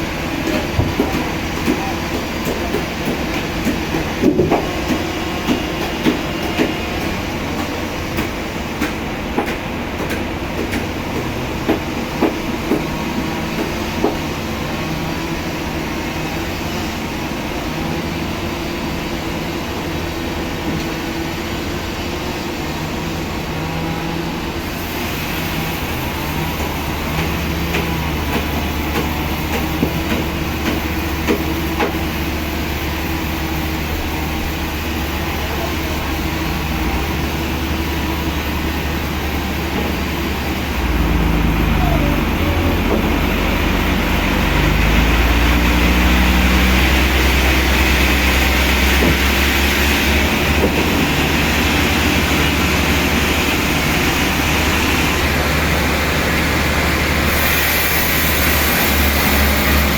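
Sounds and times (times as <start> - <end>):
heavy machinery running: 0.0 - 59.9
machinery clanks and knocks: 0.3 - 14.4, 26.5 - 32.2, 46.7 - 56.7.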